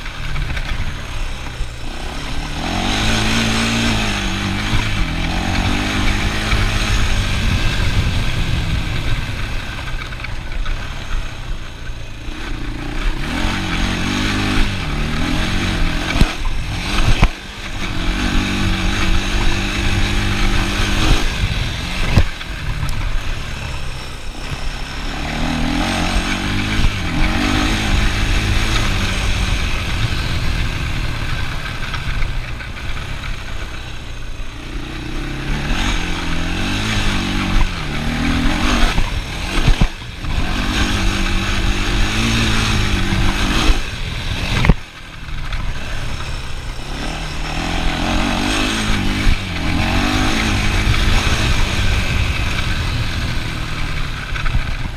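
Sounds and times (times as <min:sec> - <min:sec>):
wind rumbling on microphone: 0:00.0 - 0:12.2, 0:35.6 - 0:54.9
atv engine revving: 0:00.0 - 0:54.9.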